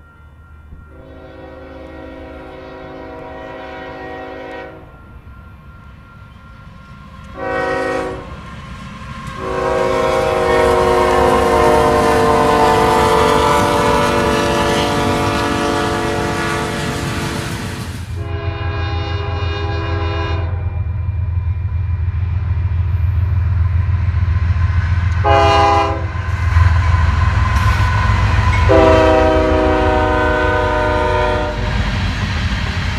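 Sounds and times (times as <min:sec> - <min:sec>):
diesel locomotive rumble: 0:00.0 - 0:32.9
locomotive air horn chord: 0:00.9 - 0:05.0, 0:07.3 - 0:08.4, 0:09.3 - 0:20.8, 0:25.1 - 0:31.8.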